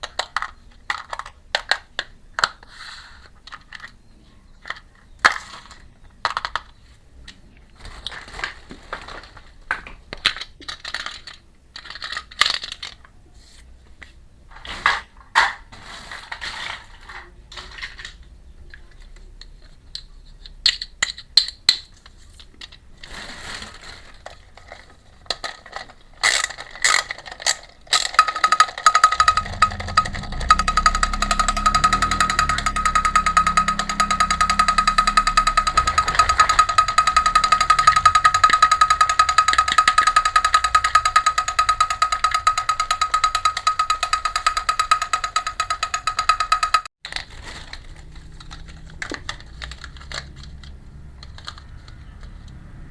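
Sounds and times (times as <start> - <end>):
plastic toy pieces clicking: 0.0 - 4.0, 4.6 - 6.8, 10.1 - 13.1, 19.9 - 22.8, 24.2 - 52.6
steady high-toned buzz: 28.8 - 46.8.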